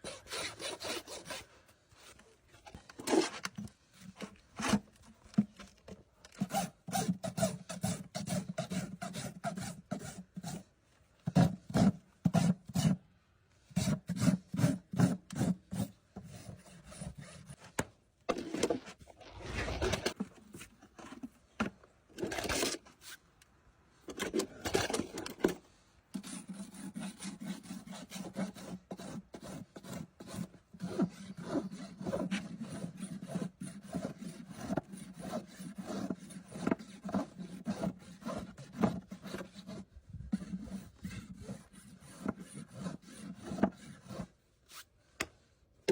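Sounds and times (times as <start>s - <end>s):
rasp filing a horse's hoof: 0.0s - 1.5s, 6.4s - 10.7s, 11.3s - 13.0s, 13.7s - 17.6s, 26.2s - 44.8s.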